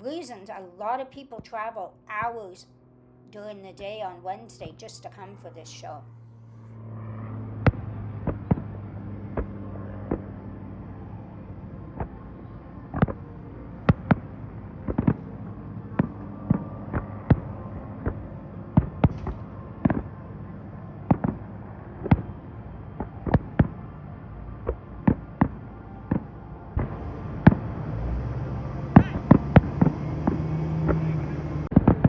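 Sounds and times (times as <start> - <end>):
low hum: 0.0 - 32.0
fireworks bangs: 14.8 - 20.2, 21.0 - 22.3.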